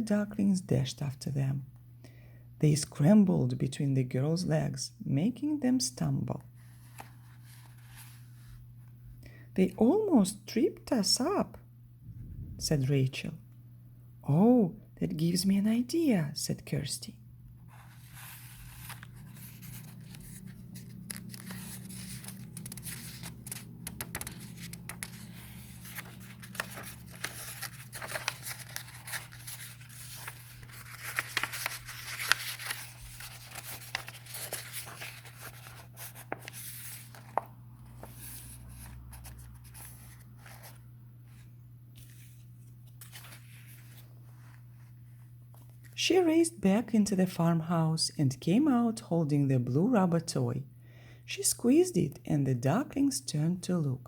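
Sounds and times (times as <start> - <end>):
paper rustling and crinkling: 6.6 - 8.6, 17.6 - 46.0.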